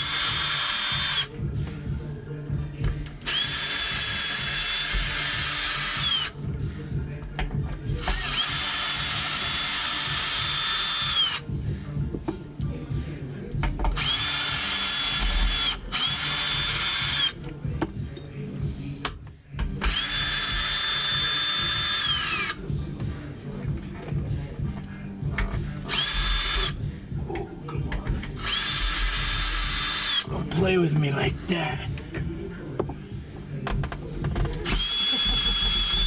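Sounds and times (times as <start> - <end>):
power drill whining: 0.0 - 1.4, 3.2 - 6.4, 8.0 - 11.5, 13.9 - 17.4, 19.8 - 22.6, 25.9 - 26.8, 28.4 - 30.3, 34.6 - 36.0.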